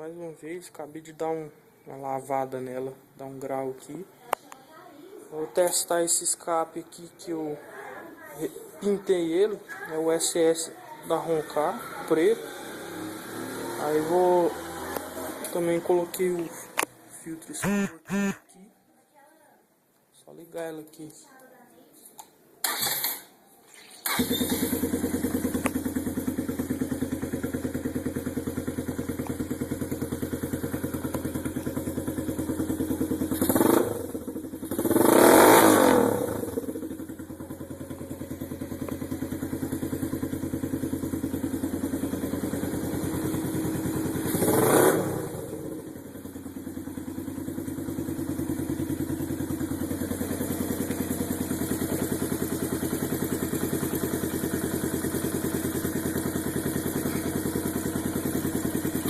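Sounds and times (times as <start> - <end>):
motorcycle engine idling and revving: 8.2 - 18.3, 24.0 - 59.0.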